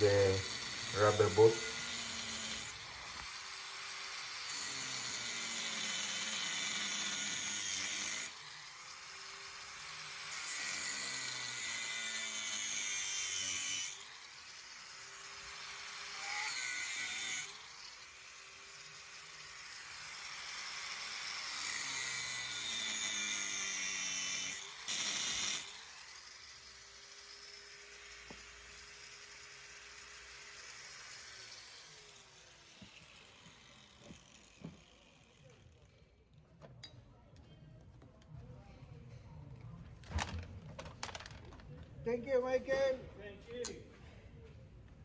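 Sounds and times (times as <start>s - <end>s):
power tool cutting metal: 0.0s - 35.6s.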